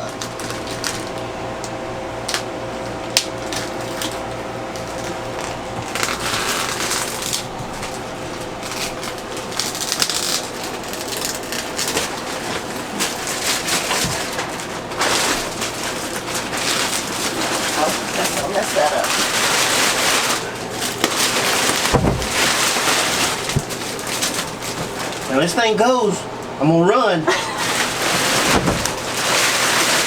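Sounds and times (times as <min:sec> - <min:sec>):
objects being handled: 0:27.6 - 0:30.0.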